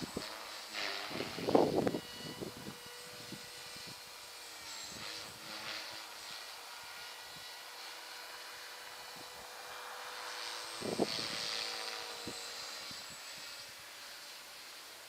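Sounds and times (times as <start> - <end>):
rc helicopter rotor whine: 0.0 - 15.0
wind buffeting microphone: 1.1 - 4.0, 10.8 - 11.5.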